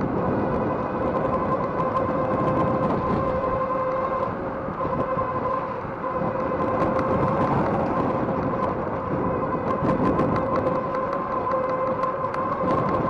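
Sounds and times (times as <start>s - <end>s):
electric bike rolling noise: 0.0s - 13.0s
steady motor whine: 0.0s - 13.0s
wind rushing over microphone: 0.0s - 13.0s
camera mount rattling ticks: 6.2s - 13.0s.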